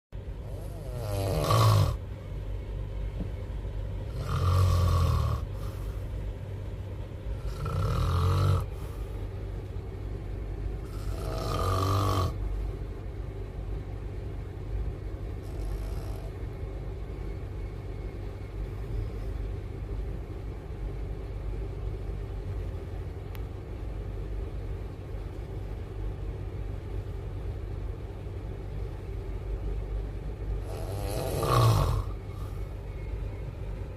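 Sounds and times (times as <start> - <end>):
moving train rumble: 0.2 - 33.9
person snoring loudly: 0.4 - 2.0, 4.1 - 5.8, 7.4 - 8.8, 10.8 - 12.4, 15.4 - 16.4, 30.6 - 32.2.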